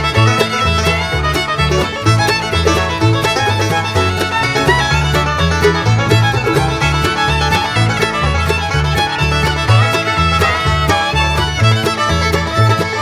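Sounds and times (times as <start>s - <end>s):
bluegrass music with fiddle: 0.0s - 13.0s.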